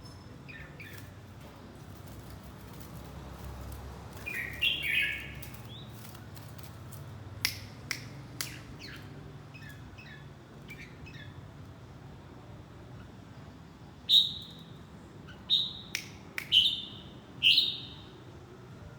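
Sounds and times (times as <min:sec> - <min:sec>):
bird chirps: 0:04.2 - 0:06.0, 0:14.1 - 0:14.7, 0:15.3 - 0:18.2.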